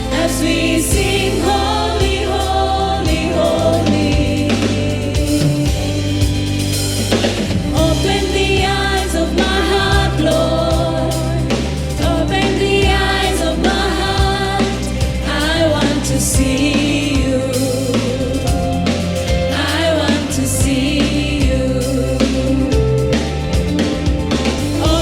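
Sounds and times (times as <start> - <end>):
band with bass and drums: 0.0 - 25.0
voices singing gospel song: 0.0 - 25.0.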